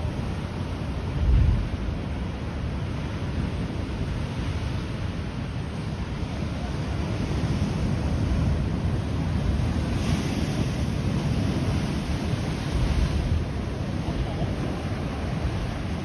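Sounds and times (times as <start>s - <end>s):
wind on microphone: 0.0s - 2.2s, 6.6s - 16.0s
surf on rocky shore: 0.0s - 16.0s.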